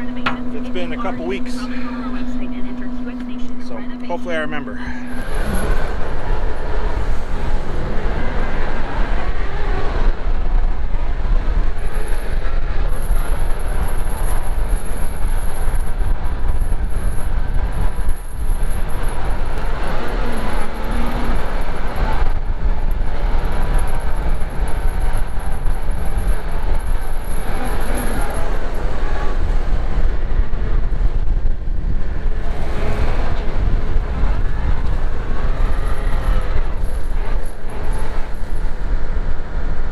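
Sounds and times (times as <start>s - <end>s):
thin high whine: 0.0s - 11.0s, 11.6s - 31.5s
diesel engine rumble: 0.0s - 39.9s.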